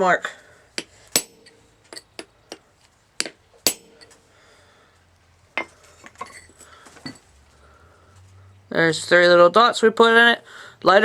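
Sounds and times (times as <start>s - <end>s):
hammer tapping punch on steel: 0.8s - 2.6s, 3.2s - 4.2s.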